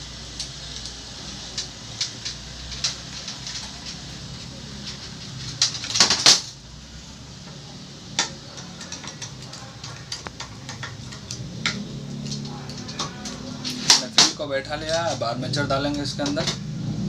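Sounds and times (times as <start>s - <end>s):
metal parts clicking and clattering: 0.4s - 6.6s, 8.2s - 15.2s.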